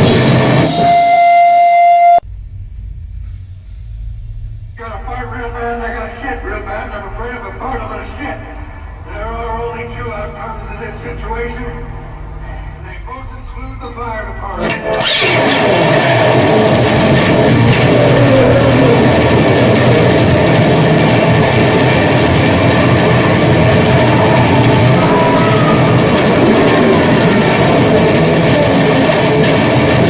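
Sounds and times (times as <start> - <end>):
harsh distorted noise music: 0.0 - 1.3, 14.5 - 30.0.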